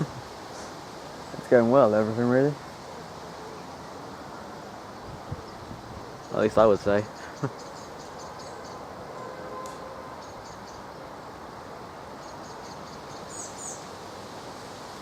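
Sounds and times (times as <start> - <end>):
small bird chirping: 5.0 - 8.9, 10.2 - 10.9, 12.2 - 13.9.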